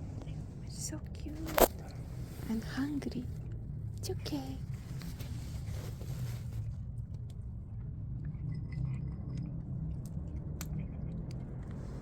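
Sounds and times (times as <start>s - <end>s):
low background rumble: 0.0s - 12.0s
cat chewing food: 7.7s - 12.0s.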